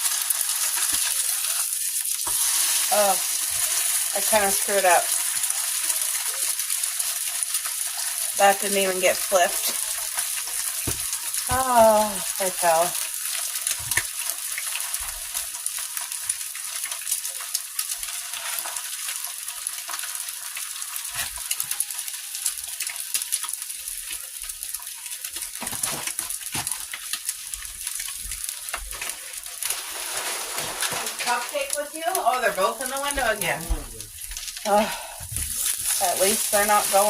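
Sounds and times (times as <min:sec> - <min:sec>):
eggs sizzling in a pan: 0:00.0 - 0:37.0.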